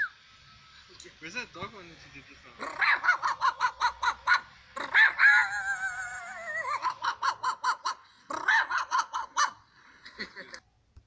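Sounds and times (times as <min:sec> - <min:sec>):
man imitating dog barks: 0:02.6 - 0:05.3.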